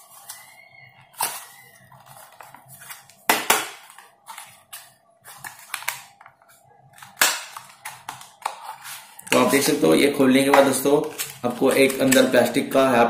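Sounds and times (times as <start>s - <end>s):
cardboard packaging rustling: 0.0s - 10.0s, 10.6s - 12.6s.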